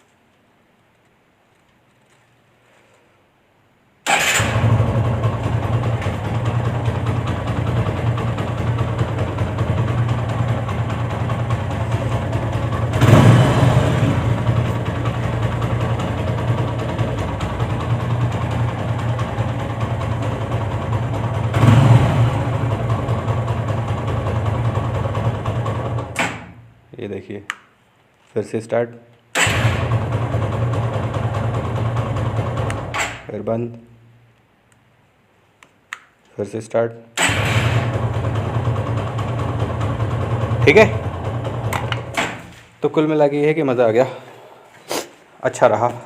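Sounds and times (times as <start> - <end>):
motorcycle engine idling and revving: 4.2 - 26.6, 29.4 - 33.0, 37.2 - 42.4.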